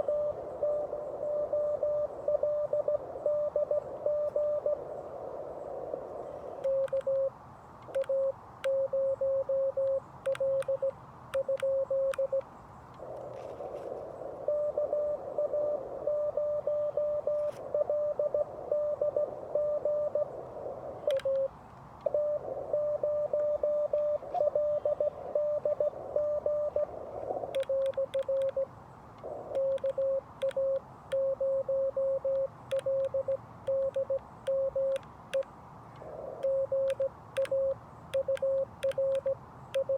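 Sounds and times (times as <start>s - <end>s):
morse code tone: 0.0s - 4.8s, 6.6s - 7.3s, 8.0s - 12.4s, 14.5s - 20.3s, 21.1s - 21.5s, 22.1s - 26.9s, 27.6s - 28.7s, 29.5s - 35.5s, 36.4s - 39.9s
radio band noise hiss: 0.0s - 39.9s.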